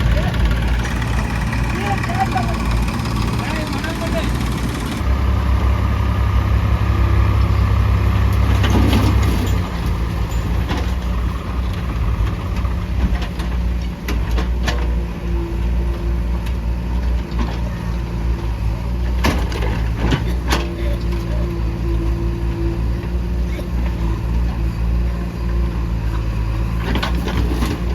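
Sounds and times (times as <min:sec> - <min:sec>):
diesel engine running: 0:00.0 - 0:27.9.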